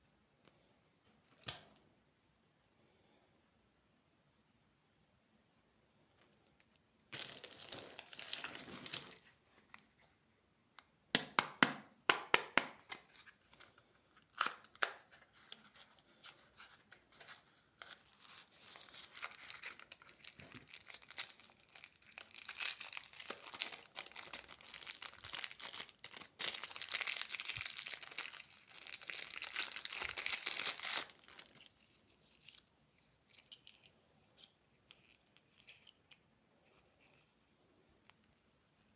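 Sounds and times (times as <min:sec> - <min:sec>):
candy wrapper crinkling: 0:06.4 - 0:09.6, 0:12.9 - 0:37.4.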